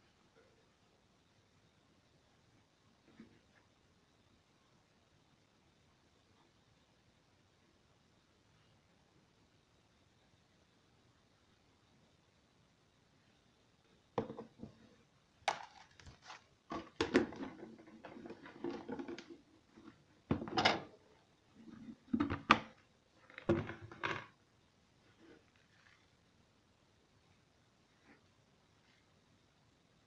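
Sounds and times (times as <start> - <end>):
dishes knocking and clattering: 14.2 - 14.8, 16.7 - 19.3, 20.3 - 20.9.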